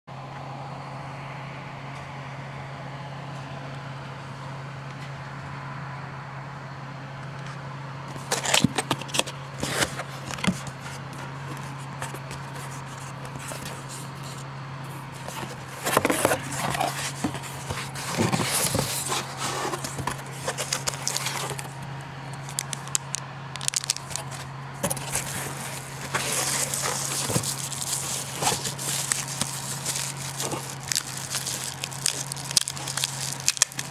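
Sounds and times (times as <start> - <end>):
steady low hum: 0.1 - 33.9
plastic wrapping crinkling: 8.1 - 21.8, 22.4 - 33.9
cardboard scraping: 8.1 - 33.9.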